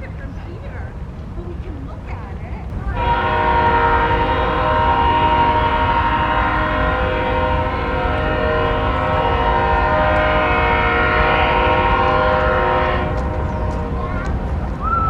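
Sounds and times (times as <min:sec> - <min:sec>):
train rumbling on rails: 0:00.0 - 0:15.0
train air horn blast: 0:02.9 - 0:14.5.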